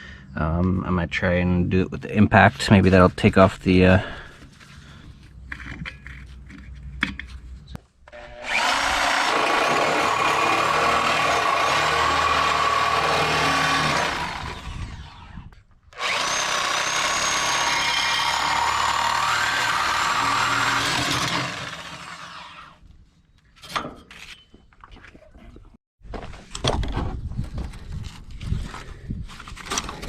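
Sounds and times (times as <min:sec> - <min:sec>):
air impact wrench running: 0:08.2 - 0:15.2, 0:16.0 - 0:22.4.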